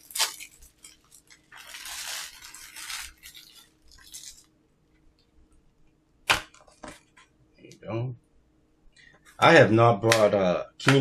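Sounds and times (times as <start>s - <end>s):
packaging tearing rustle: 0.0s - 4.5s.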